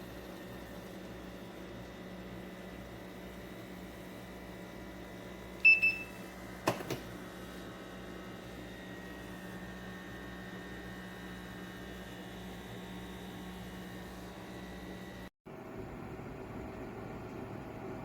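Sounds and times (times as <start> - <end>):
coffee maker electronic beep: 5.4 - 6.3.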